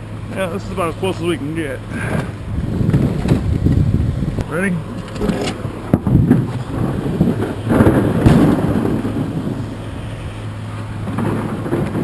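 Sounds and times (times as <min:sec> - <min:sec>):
steady low hum: 0:00.0 - 0:12.0
loud rumbling crash of scrap: 0:01.9 - 0:04.3, 0:04.9 - 0:12.0
sharp metal bangs: 0:05.1 - 0:10.1.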